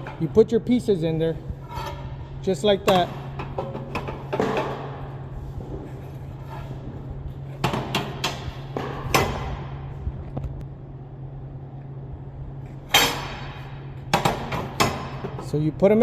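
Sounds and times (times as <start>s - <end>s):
steel pickets clanking on metal: 0.0s - 0.4s, 1.6s - 5.0s
low hum: 0.0s - 16.0s.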